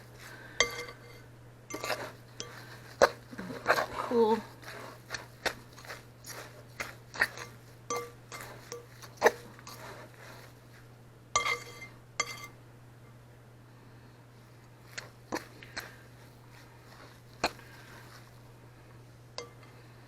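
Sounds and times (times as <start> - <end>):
dishes and utensils clinking: 0.6 - 4.0, 5.8 - 9.9, 11.4 - 12.6.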